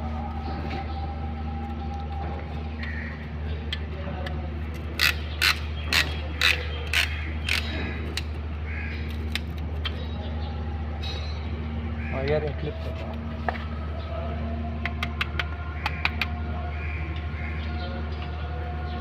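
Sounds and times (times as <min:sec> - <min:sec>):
steady low hum: 0:00.0 - 0:19.0
metallic clicks of hand tools: 0:05.0 - 0:08.3.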